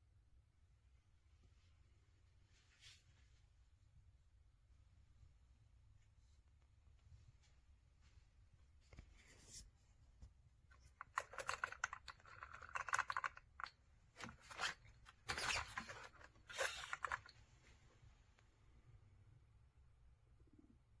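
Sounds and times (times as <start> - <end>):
rapid clicking and crackling: 10.7 - 17.4.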